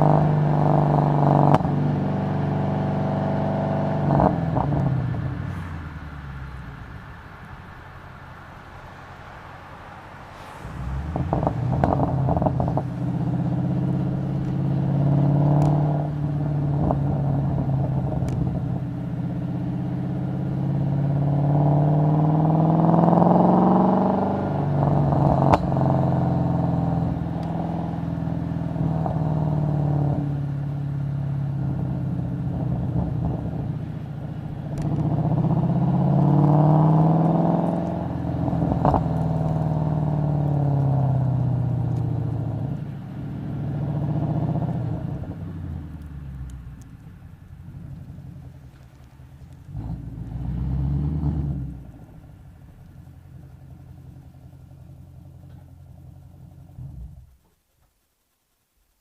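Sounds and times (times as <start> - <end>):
car exhaust revving: 0.0 - 57.4
sharp exhaust crack: 9.8 - 15.0.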